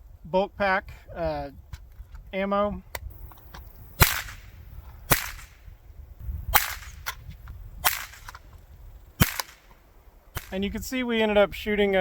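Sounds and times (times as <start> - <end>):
rifle shots: 4.0 - 5.7, 6.5 - 7.2, 7.8 - 8.5, 9.2 - 9.8, 10.4 - 10.6.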